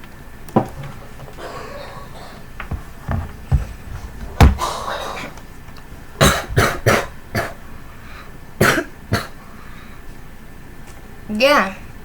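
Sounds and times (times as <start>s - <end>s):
person coughing: 6.2s - 7.6s, 8.6s - 9.4s.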